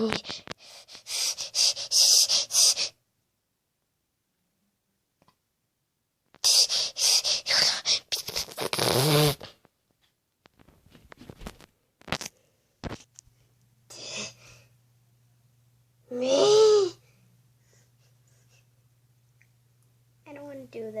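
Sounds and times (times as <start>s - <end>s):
girl breathing sharply: 0.2s - 3.0s, 13.9s - 14.8s
rustling and handling noise: 8.2s - 13.7s.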